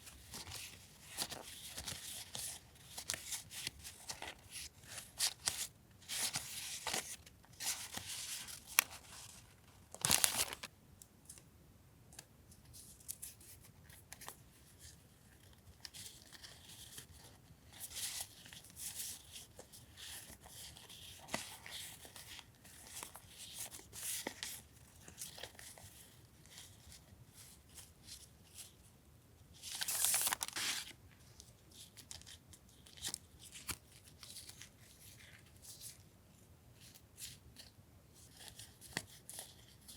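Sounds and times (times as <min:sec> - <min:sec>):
paper and packaging rustling: 0:00.0 - 0:10.7, 0:29.7 - 0:36.0.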